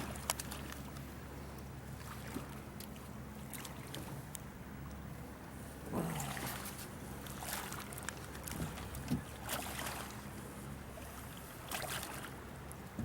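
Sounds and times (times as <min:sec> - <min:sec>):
short splashes: 0:05.9 - 0:12.5.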